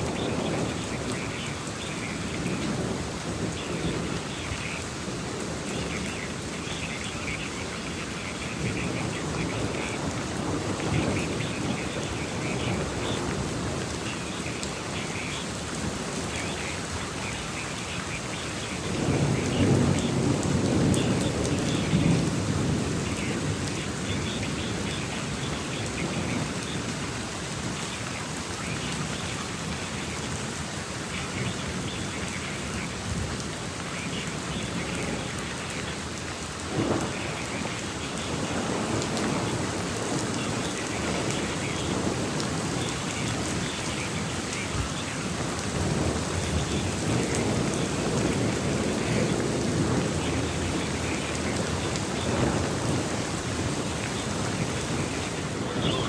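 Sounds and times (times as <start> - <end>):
steady rain falling: 0.0 - 56.0
thunder rumbling: 18.8 - 27.0, 36.6 - 56.0.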